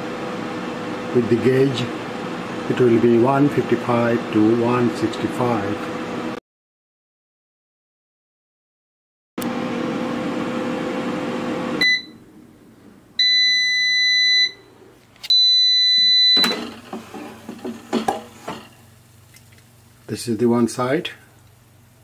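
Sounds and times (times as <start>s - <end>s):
air fryer fan hum: 0.0s - 6.4s, 9.4s - 22.0s
beeps: 15.3s - 16.6s.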